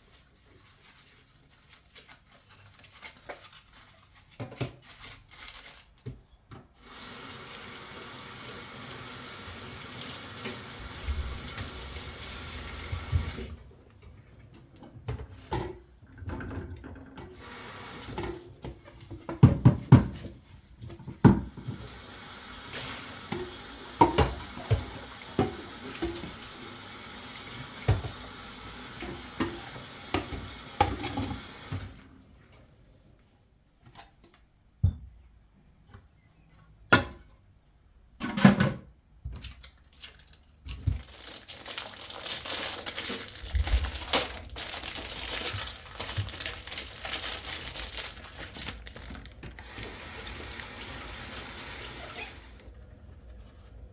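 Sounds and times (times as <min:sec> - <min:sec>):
tap water running into sink: 0:06.8 - 0:13.7, 0:16.5 - 0:18.5, 0:21.1 - 0:32.1, 0:49.5 - 0:52.6
dishes knocking and clinking: 0:23.3 - 0:26.3.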